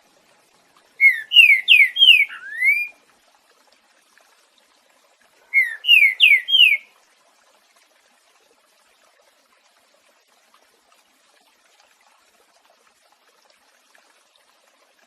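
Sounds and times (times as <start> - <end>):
bird whistled song: 1.0 - 2.9, 5.5 - 6.8.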